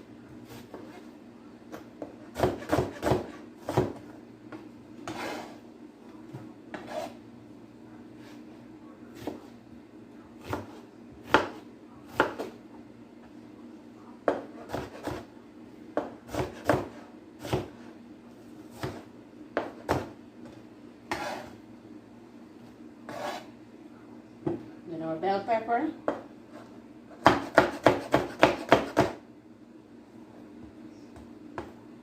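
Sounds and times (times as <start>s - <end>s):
knife chopping on cutting board: 2.0s - 4.0s, 10.4s - 12.5s, 14.3s - 15.3s, 16.0s - 17.8s, 21.1s - 21.5s, 27.2s - 29.2s.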